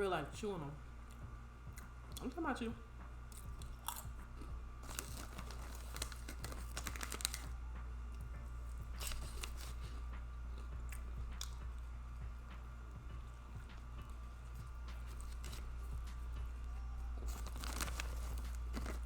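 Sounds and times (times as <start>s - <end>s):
low hum: 0.0s - 19.0s
chewing and lip-smacking: 3.3s - 7.5s, 9.0s - 11.8s.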